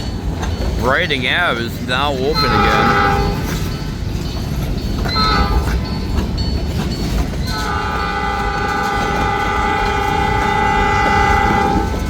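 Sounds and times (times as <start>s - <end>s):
freight train rumbling: 0.0s - 12.0s
train air horn blast: 2.3s - 3.5s, 5.2s - 5.7s, 7.5s - 12.0s.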